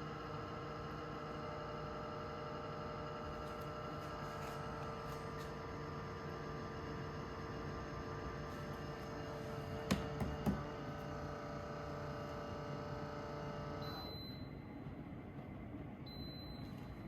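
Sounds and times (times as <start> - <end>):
humidifier humming: 0.0 - 17.0
short high beep: 13.8 - 14.6.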